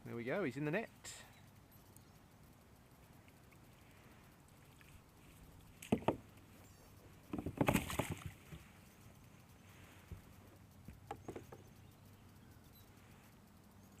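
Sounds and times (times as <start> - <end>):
knocks on plastic kayak: 5.8 - 6.2.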